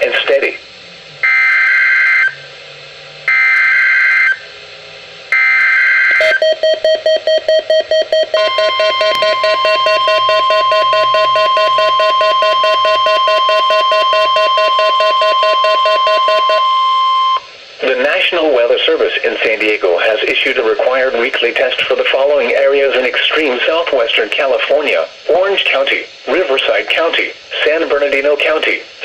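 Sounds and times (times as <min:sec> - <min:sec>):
steady high alert tone: 0:06.1 - 0:17.5
rapidly pulsing buzzy alert tone: 0:06.2 - 0:17.4
warbling digital header tones: 0:06.2 - 0:17.5.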